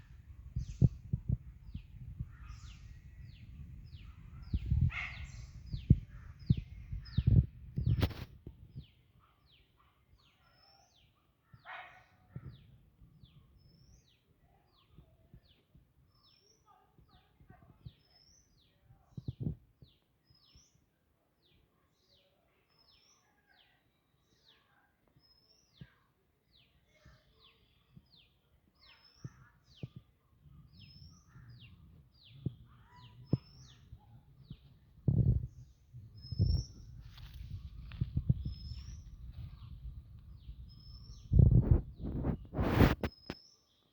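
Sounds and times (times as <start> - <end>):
birds chirping: 0.0 - 14.2, 26.6 - 43.9.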